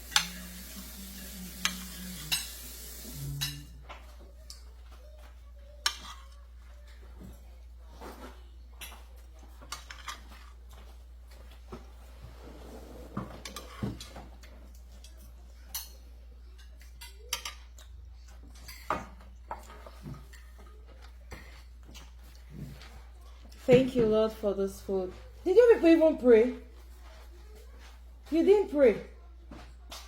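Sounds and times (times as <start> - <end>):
cutlery clinking on plates: 0.0 - 4.2, 13.1 - 20.5.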